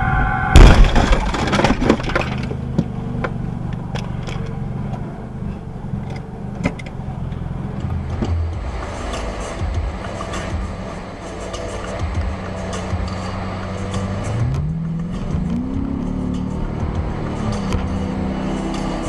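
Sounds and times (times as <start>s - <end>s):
car crash: 0.0s - 2.7s
vehicle low rumble: 0.0s - 19.0s
debris crunching: 0.6s - 2.8s.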